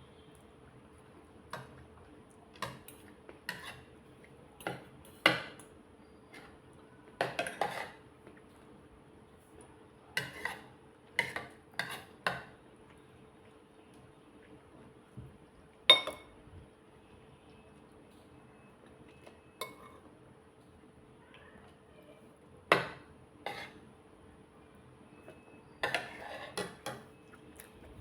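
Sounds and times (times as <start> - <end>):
cutlery clinking on dish: 7.2 - 8.0, 15.9 - 16.3, 19.6 - 20.0, 25.8 - 27.1.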